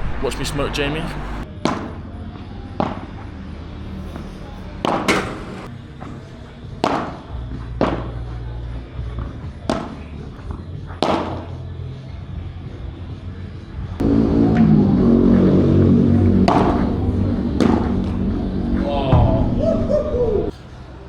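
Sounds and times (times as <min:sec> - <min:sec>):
racket hitting ball: 0:04.8 - 0:05.7, 0:16.1 - 0:19.5.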